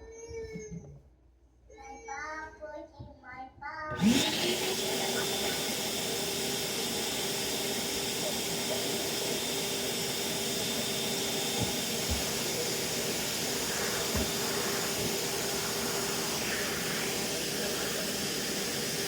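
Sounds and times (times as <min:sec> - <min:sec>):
vacuum cleaner running: 0:03.9 - 0:19.0.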